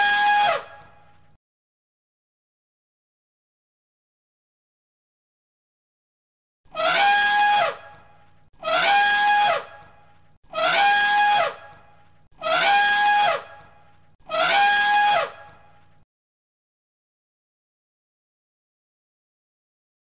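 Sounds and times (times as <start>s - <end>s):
elephant trumpeting: 14.3s - 15.5s.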